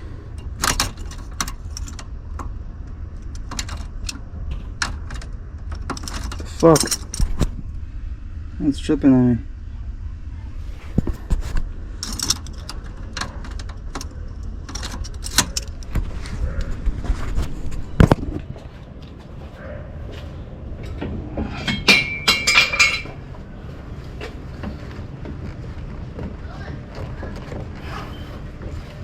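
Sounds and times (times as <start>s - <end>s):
metal tools clinking: 4.8s - 7.3s, 12.0s - 15.9s, 21.5s - 23.2s.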